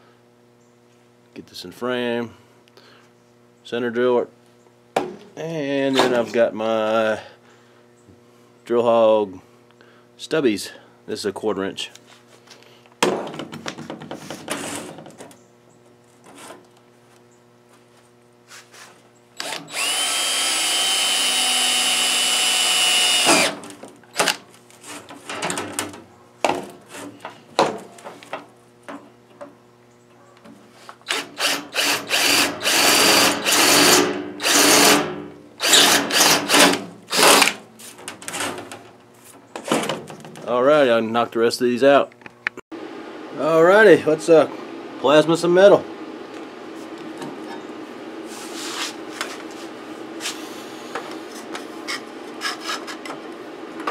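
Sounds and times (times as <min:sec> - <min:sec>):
power drill boring steel: 0:19.4 - 0:23.6, 0:31.1 - 0:37.5.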